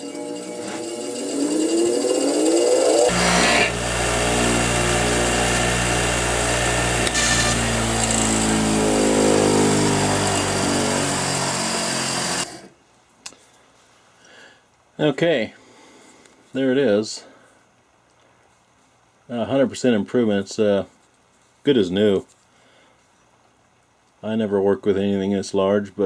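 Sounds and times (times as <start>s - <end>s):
wire brush wheel motor hum: 0.0s - 12.7s.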